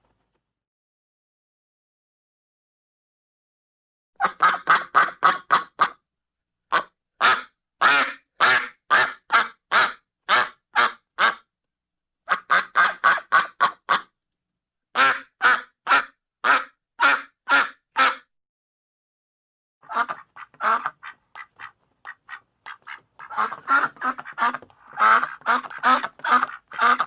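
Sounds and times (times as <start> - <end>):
duck quacking: 4.2 - 6.0, 6.7 - 11.5, 12.3 - 14.1, 15.0 - 18.3, 19.8 - 27.0.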